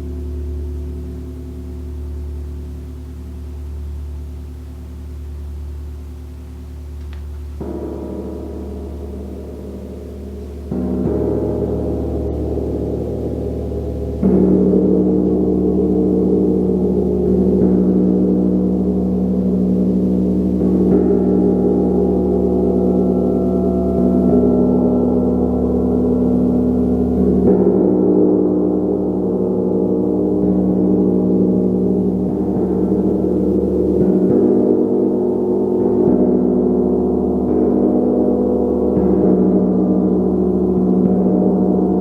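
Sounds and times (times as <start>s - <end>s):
gong ringing: 7.6s - 42.0s.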